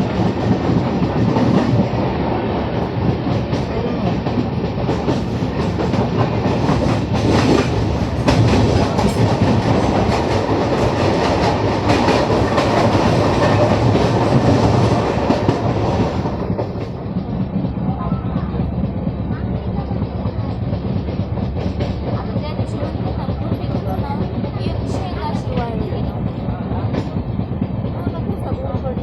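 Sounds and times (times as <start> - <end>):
sharp rail clicks: 0.0 - 17.8
train wheels rumbling on track: 0.0 - 29.0.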